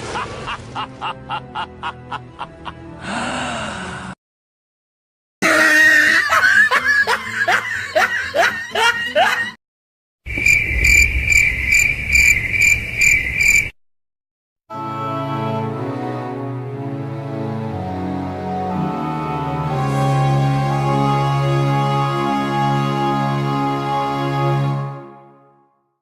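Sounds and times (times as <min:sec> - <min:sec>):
cricket chirping: 0:10.3 - 0:13.7
sustained musical drone: 0:15.8 - 0:24.9.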